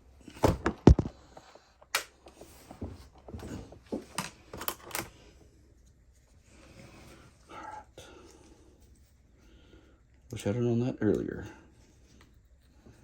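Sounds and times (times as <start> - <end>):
small parts and tools clicking: 4.1 - 5.1.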